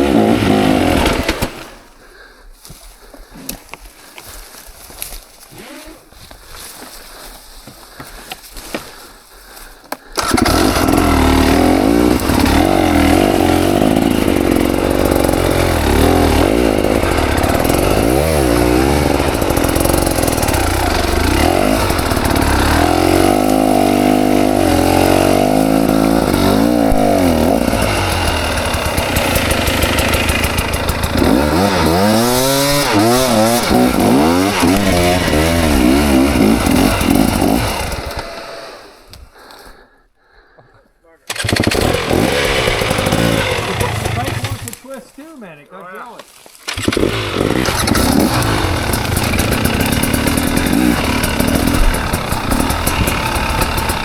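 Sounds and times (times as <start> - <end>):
dirt bike engine revving: 0.0 - 1.9, 10.2 - 39.1, 41.3 - 44.8, 46.7 - 54.0.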